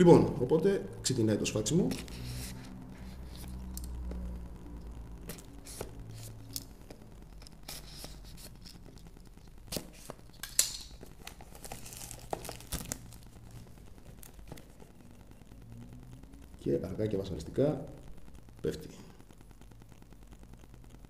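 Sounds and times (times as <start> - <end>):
packaging tearing and crinkling: 9.7 - 14.8.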